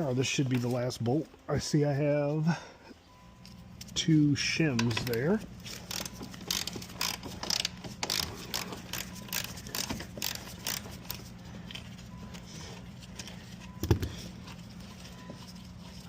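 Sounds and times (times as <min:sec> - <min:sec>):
ratchet wrench clicking: 0:05.6 - 0:11.2.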